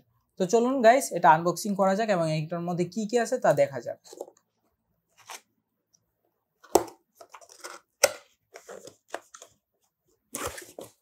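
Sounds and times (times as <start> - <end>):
cardboard packaging rustling: 5.1 - 5.5, 8.5 - 9.6, 10.3 - 11.0.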